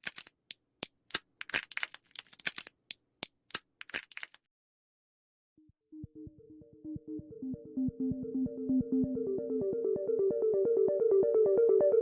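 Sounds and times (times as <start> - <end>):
birds pecking and cracking seeds: 0.0 - 4.4.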